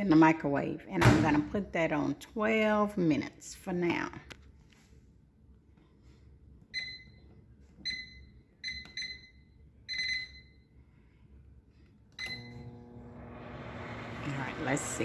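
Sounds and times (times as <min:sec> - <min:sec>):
microwave keypad beeping: 0:07.9 - 0:10.6, 0:12.2 - 0:12.6.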